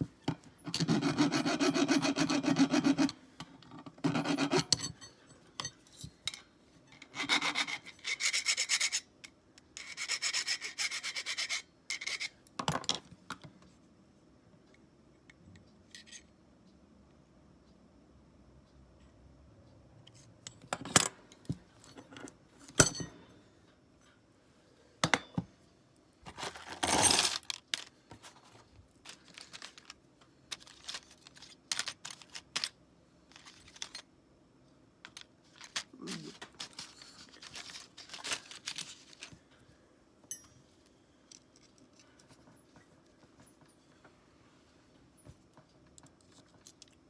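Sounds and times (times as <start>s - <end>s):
metal tools clicking and knocking: 3.6s - 6.5s, 20.5s - 23.3s, 40.2s - 40.6s.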